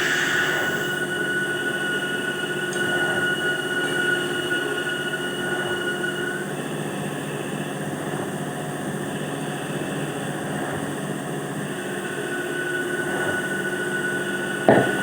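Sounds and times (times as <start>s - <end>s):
machine humming: 0.0s - 1.3s
high whine: 0.0s - 2.6s.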